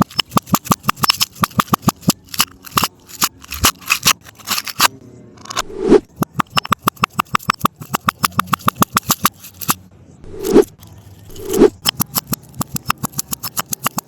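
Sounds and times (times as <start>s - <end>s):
brittle crunching and crackling: 0.0s - 4.9s
swooshing sounds: 5.6s - 6.4s, 10.2s - 12.1s.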